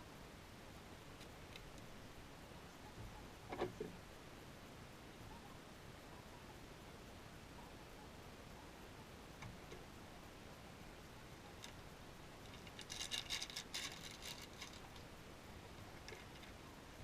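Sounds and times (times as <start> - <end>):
rustling: 11.3 - 17.0
small objects clicking: 12.4 - 15.0.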